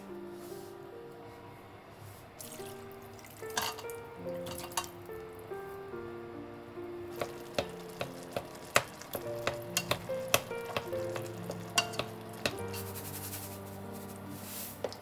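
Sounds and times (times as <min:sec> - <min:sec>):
soft background music: 0:00.0 - 0:15.0
food sizzling in a pan: 0:02.5 - 0:05.1, 0:07.1 - 0:15.0
utensil clicking against pan: 0:07.2 - 0:12.9.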